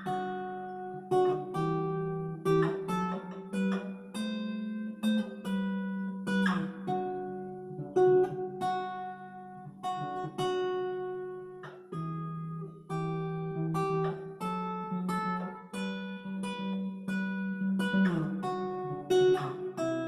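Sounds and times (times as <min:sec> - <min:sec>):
acoustic guitar picking: 0:00.0 - 0:20.0.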